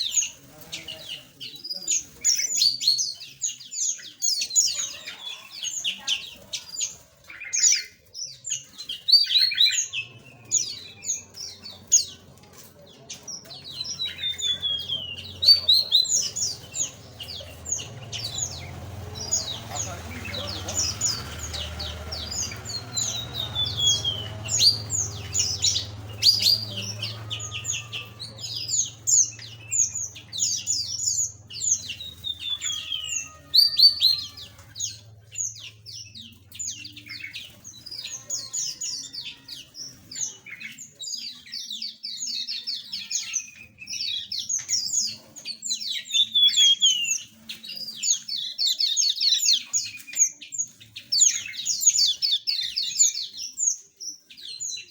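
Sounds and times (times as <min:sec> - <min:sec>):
small birds chirping: 0:00.0 - 0:54.9.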